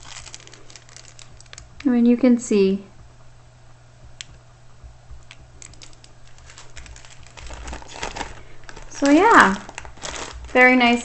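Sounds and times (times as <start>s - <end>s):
plastic film rustling: 0.0s - 2.1s, 5.2s - 11.0s.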